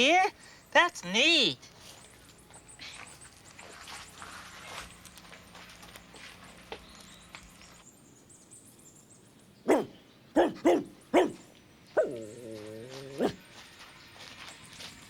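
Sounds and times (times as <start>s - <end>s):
dog barking: 9.6s - 12.3s, 13.1s - 13.4s
dog yelp: 9.7s - 11.4s, 12.0s - 13.4s
dog whining: 12.0s - 13.4s.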